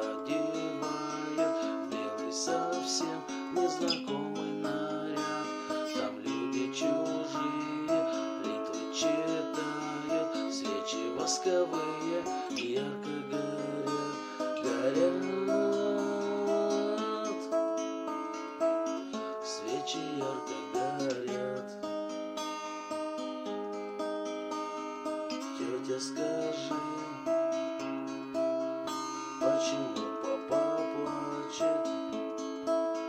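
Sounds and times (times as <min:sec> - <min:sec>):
acoustic guitar chords: 0:00.0 - 0:33.0.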